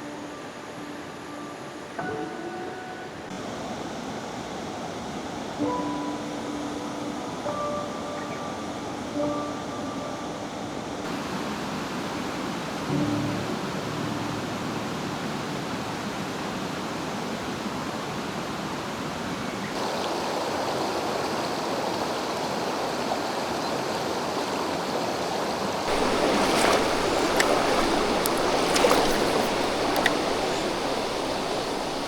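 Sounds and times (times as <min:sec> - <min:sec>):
stream rushing over rocks: 0:19.8 - 0:32.0
water splashing: 0:25.8 - 0:32.0.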